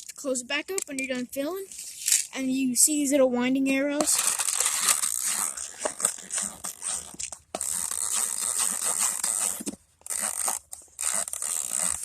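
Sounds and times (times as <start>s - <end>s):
magazine winding wheel ratcheting: 4.1s - 12.0s.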